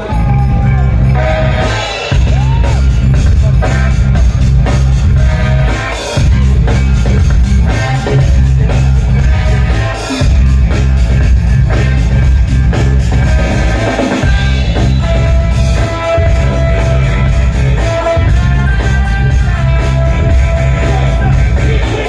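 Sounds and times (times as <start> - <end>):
heavy bass beat: 0.0 - 22.0
loud music with singing: 0.0 - 22.0.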